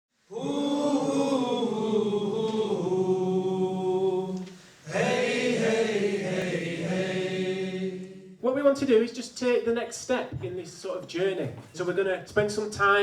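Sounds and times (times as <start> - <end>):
voices chanting: 0.3 - 8.5.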